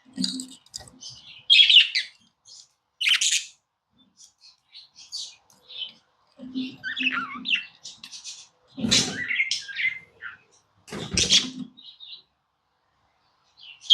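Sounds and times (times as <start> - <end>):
budgerigars chirping and chattering: 0.2 - 3.6, 4.2 - 10.4, 11.0 - 12.2.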